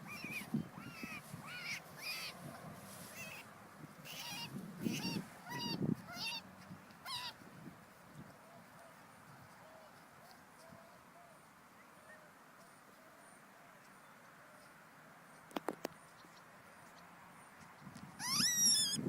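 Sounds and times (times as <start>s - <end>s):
wavering bird calls: 0.0s - 7.4s, 18.2s - 19.0s.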